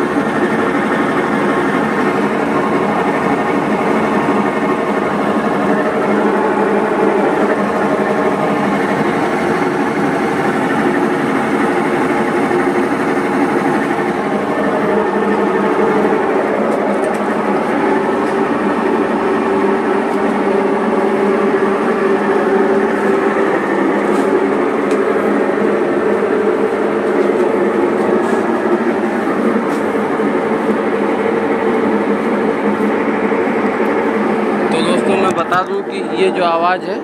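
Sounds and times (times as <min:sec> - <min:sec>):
washing machine spinning: 0:00.0 - 0:37.0.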